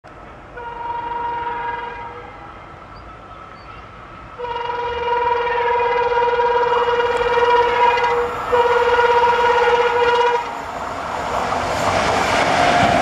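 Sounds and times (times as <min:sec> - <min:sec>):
locomotive horn blasts: 0:00.6 - 0:02.6, 0:04.4 - 0:10.6.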